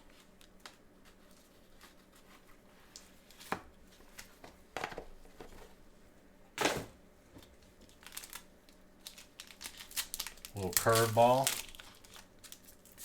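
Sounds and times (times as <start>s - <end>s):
cards and packaging rustling: 7.7s - 13.0s.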